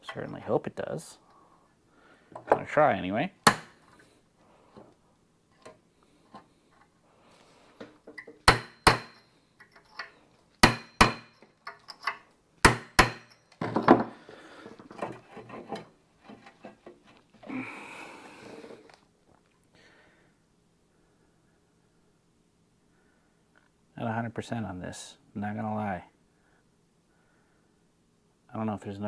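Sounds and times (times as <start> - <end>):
hammer striking metal: 3.5 - 3.8, 8.4 - 9.2, 10.6 - 11.4, 12.6 - 13.4
softer knocks and clatter: 13.0 - 17.2.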